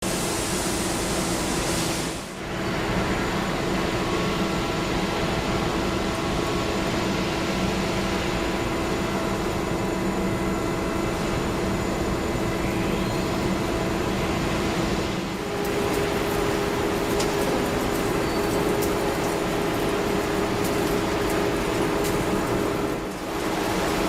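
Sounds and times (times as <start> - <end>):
boring machine humming: 5.3 - 24.0.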